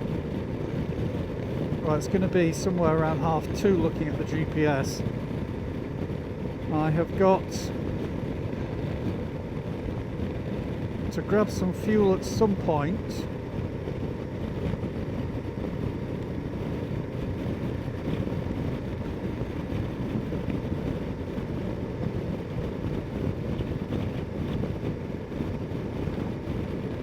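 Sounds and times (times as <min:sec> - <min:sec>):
motorcycle engine running: 0:00.0 - 0:27.0
wind rushing over microphone: 0:00.0 - 0:27.0.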